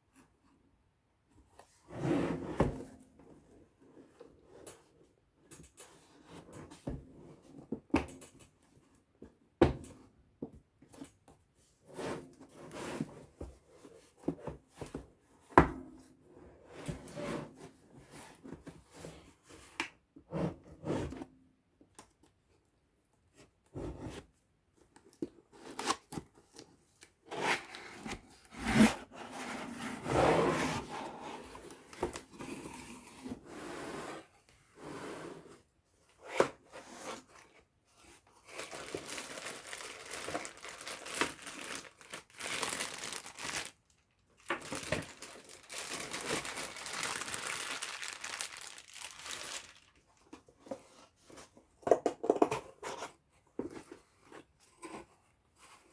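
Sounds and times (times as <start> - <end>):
rubbing and rustling: 38.1 - 50.9.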